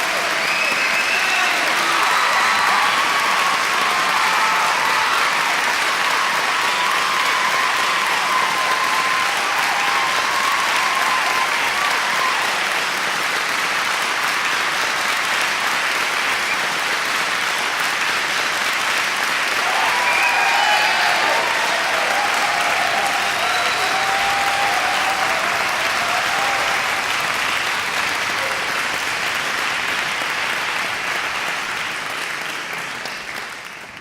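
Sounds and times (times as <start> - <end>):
voices cheering: 0.0 - 12.8, 19.5 - 29.1
crowd applauding: 0.0 - 34.0.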